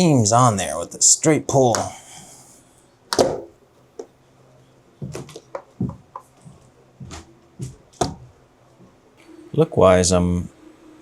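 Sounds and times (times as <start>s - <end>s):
magnetic mount clicks and knocks: 3.1s - 3.5s.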